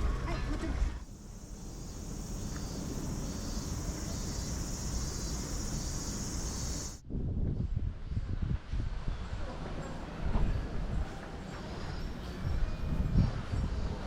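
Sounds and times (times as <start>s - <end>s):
low background rumble: 0.0s - 7.0s
high-pitched insect chorus: 1.1s - 7.0s.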